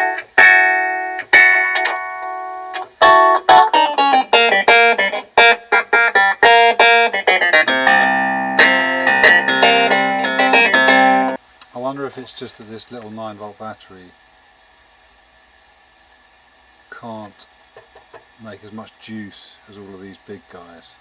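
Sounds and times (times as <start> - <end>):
electric keyboard playing: 0.0 - 11.4.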